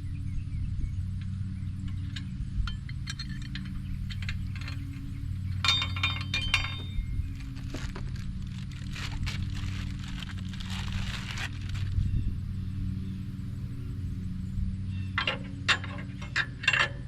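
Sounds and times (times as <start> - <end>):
ringing clatter of metal: 1.7 - 7.7, 14.9 - 17.0
metal tools clinking: 1.8 - 7.9, 15.0 - 17.0.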